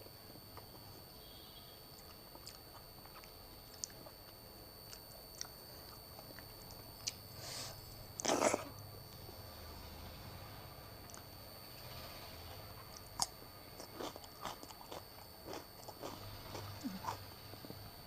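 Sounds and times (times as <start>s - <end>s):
person chewing food: 0.3s - 1.0s, 1.9s - 8.8s, 11.0s - 11.3s, 12.7s - 18.0s.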